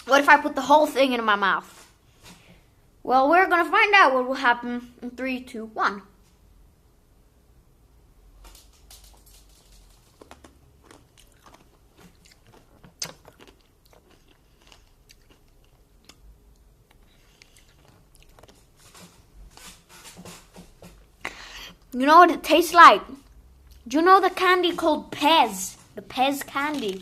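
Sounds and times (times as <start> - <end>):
hard candy crunching: 10.2 - 21.1, 26.1 - 27.0.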